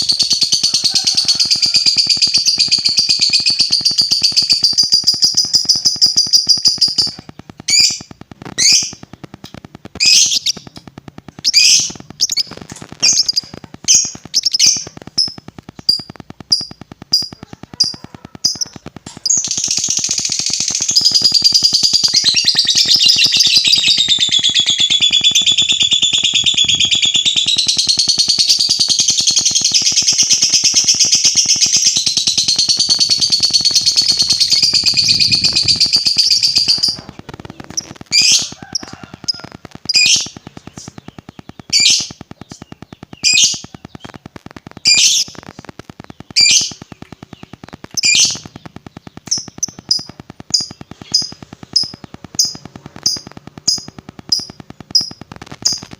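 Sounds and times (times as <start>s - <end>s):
lovebird chattering trill: 11.3s - 55.9s.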